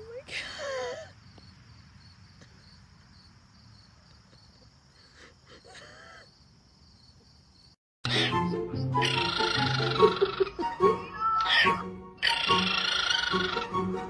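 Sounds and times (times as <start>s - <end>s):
insects chirring: 0.9s - 7.8s, 9.0s - 10.6s, 12.2s - 13.7s.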